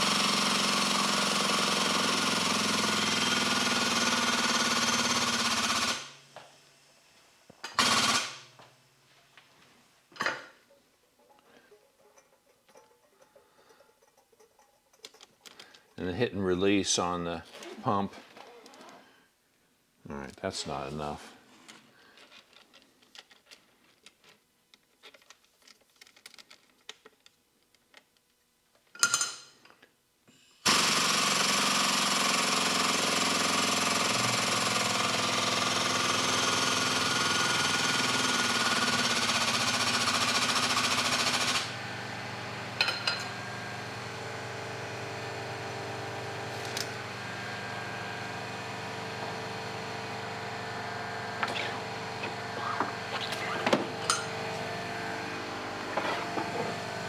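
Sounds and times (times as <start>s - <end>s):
pneumatic pump chatter: 50.8s - 57.0s.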